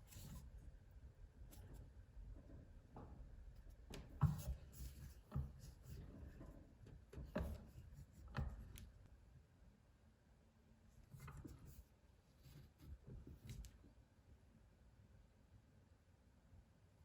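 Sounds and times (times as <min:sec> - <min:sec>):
light rubbing and scratching: 0:00.0 - 0:09.1, 0:11.0 - 0:13.8.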